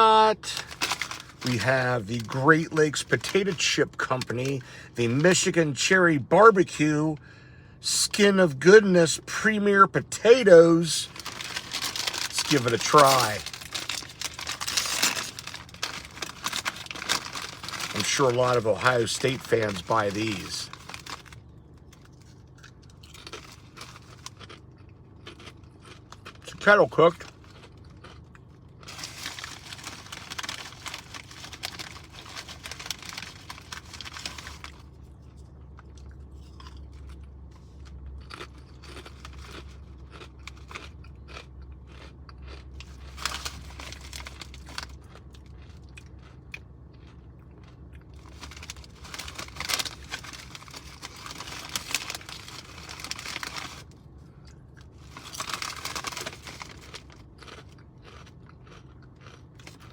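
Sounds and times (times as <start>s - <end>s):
crunching potato chips: 0.0s - 7.0s, 7.9s - 59.9s.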